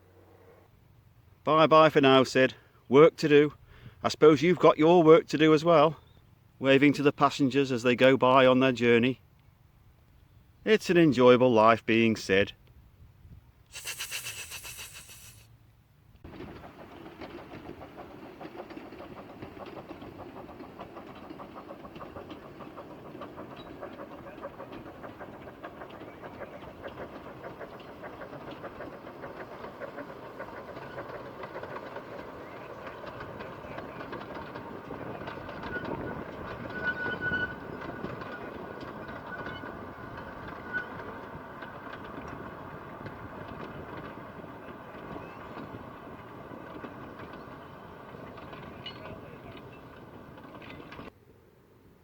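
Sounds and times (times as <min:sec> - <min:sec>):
steam train running: 0:13.7 - 0:15.5, 0:16.3 - 0:51.2
wheels clicking over track: 0:16.2 - 0:51.2.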